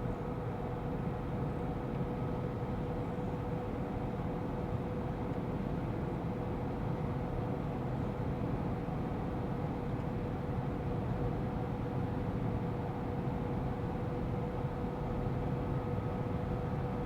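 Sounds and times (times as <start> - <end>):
road and engine noise in van: 0.0 - 17.0.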